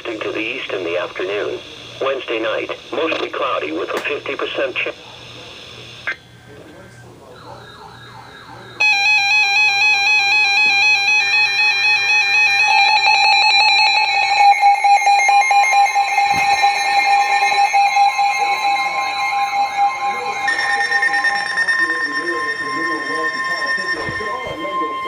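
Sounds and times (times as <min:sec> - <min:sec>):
warbling electronic data tones: 0:00.0 - 0:25.0
dual-tone attention signal: 0:07.4 - 0:25.0.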